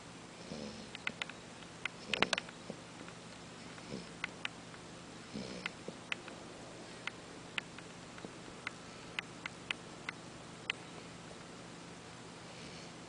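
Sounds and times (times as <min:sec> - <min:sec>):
pet snoring with squeaky clicks: 0:00.4 - 0:02.8, 0:03.6 - 0:04.4, 0:05.3 - 0:06.0
low snort: 0:03.8 - 0:04.2, 0:05.3 - 0:05.7.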